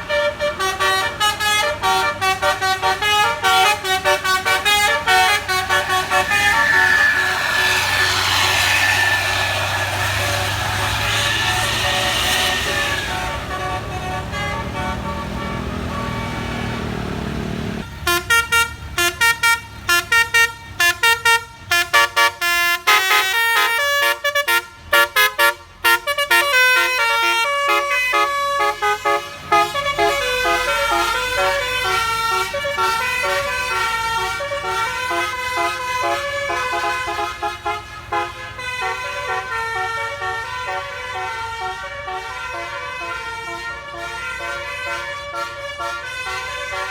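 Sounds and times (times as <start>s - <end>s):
musical air horn tune: 0.1s - 16.8s, 18.0s - 46.9s
vehicle engine noise: 0.3s - 20.9s.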